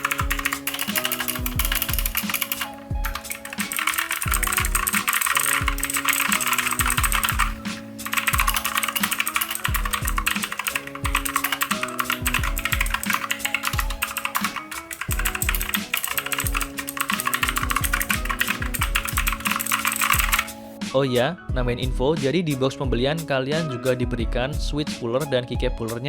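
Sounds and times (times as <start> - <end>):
rapid typing on mechanical keyboard: 0.0 - 20.6.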